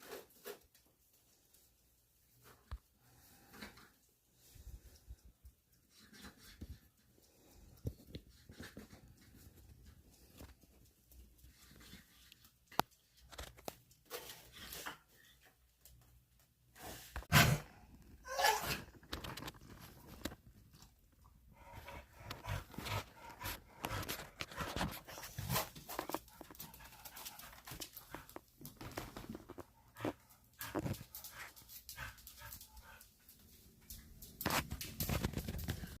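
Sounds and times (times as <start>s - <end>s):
dog scratching and chewing itself: 21.6s - 36.0s.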